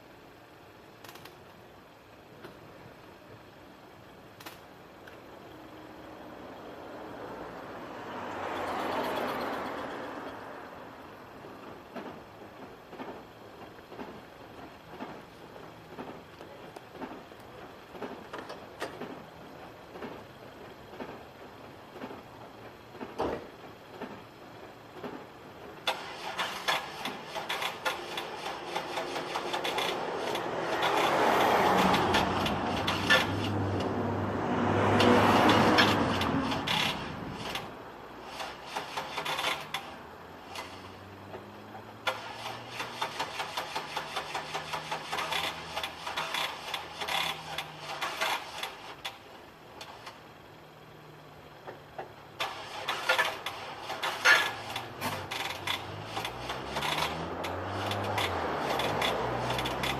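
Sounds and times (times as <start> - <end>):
starter cranking engine: 25.8 - 33.9, 35.0 - 41.0, 42.0 - 50.2, 51.7 - 59.9.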